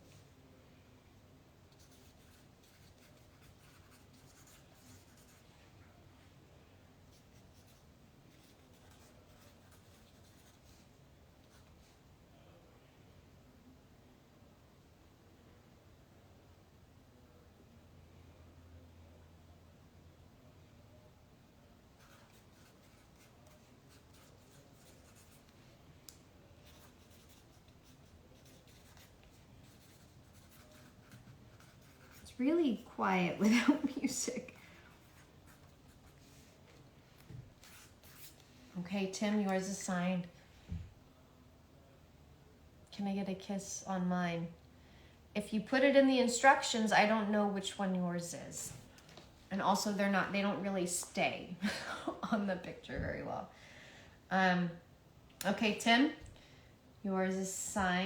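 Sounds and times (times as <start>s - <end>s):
pen scratching on paper: 1.8s - 5.4s, 22.0s - 25.5s, 26.6s - 33.0s.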